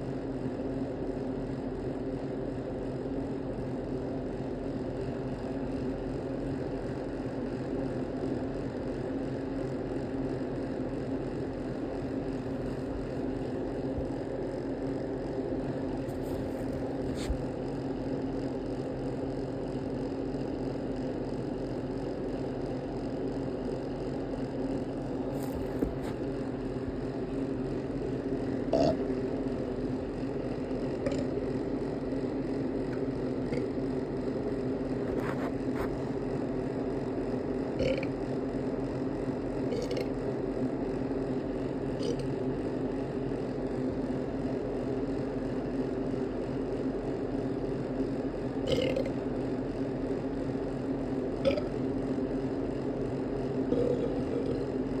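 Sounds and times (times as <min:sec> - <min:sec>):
steady low hum: 0:00.0 - 0:55.0
person burping: 0:28.7 - 0:29.0, 0:37.8 - 0:38.1, 0:48.6 - 0:49.1, 0:51.4 - 0:51.7, 0:53.7 - 0:54.6.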